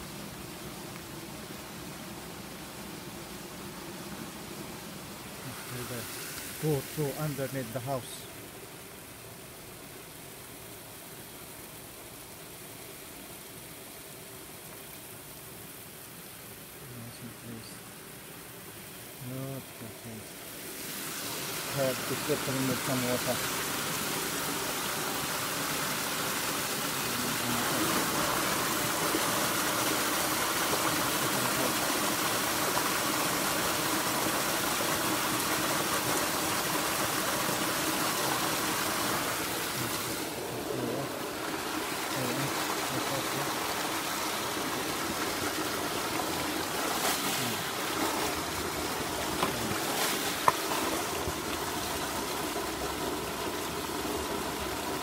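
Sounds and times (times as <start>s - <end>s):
river water rushing: 20.0s - 55.0s.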